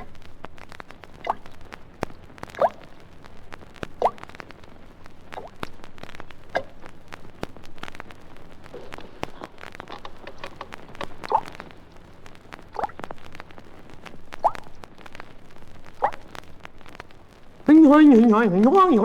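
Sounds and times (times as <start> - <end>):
record surface crackle: 0.0 - 19.0
water drips plinking: 1.2 - 1.4.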